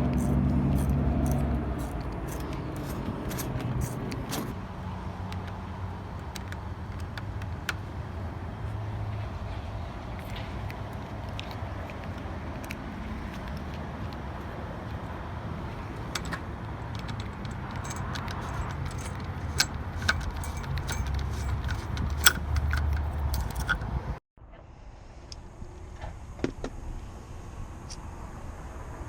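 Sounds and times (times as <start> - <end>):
low traffic rumble: 0.0 - 24.2
keys and lock hardware clicking: 0.1 - 4.6, 10.2 - 24.0.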